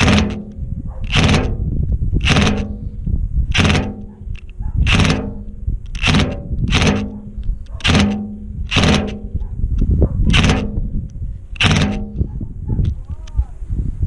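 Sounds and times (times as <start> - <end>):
short sharp bursts of noise: 0.0 - 9.4, 10.3 - 12.3
power driver motor humming: 3.5 - 9.3.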